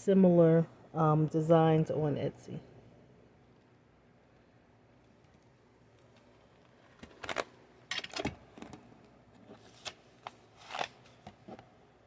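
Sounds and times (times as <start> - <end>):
paper rustling and crinkling: 9.4 - 11.7.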